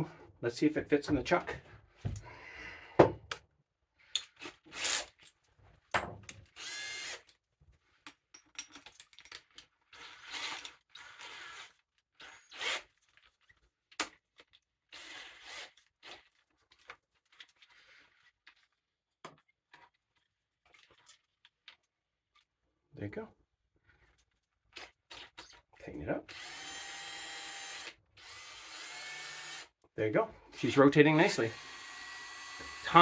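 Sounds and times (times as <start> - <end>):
power drill turning: 6.5 - 7.3, 10.0 - 12.9, 14.9 - 15.8, 26.3 - 29.7, 30.5 - 33.0.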